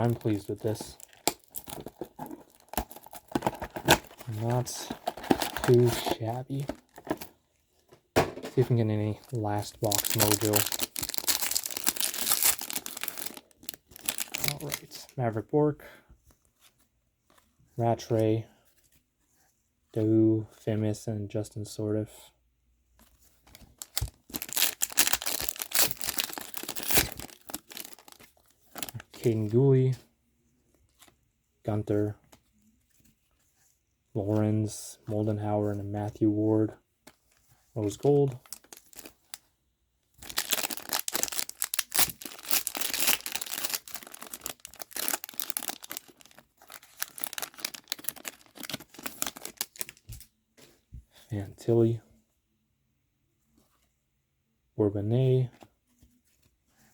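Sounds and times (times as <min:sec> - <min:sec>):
foil wrapper tearing and crinkling: 0:00.0 - 0:07.2, 0:09.6 - 0:14.8, 0:23.8 - 0:28.2, 0:38.4 - 0:39.1, 0:40.2 - 0:50.2.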